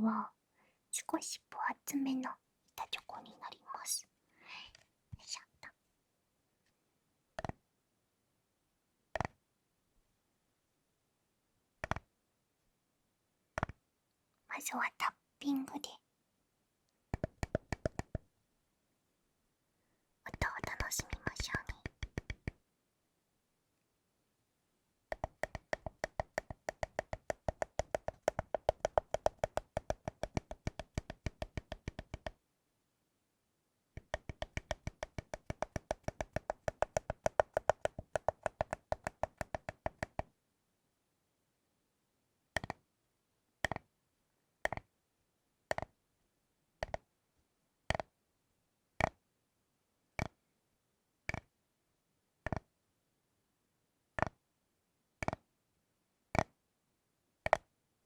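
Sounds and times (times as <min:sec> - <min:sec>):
tapping on chocolate bar: 0:25.1 - 0:32.3, 0:34.0 - 0:40.2.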